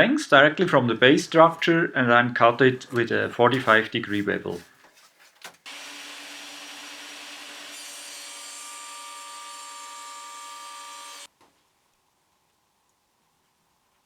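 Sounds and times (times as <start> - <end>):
table saw cutting wood: 5.7 - 11.3.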